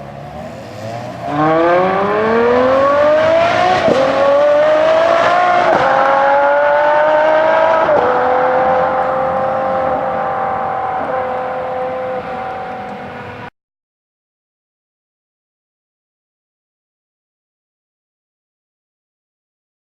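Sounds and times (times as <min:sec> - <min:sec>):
car engine accelerating hard: 0:00.0 - 0:13.5.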